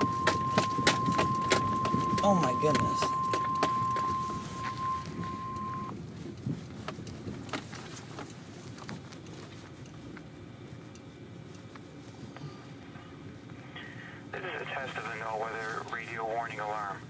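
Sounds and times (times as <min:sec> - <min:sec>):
steady warning alarm tone: 0:00.0 - 0:05.9
low background noise: 0:00.0 - 0:17.0.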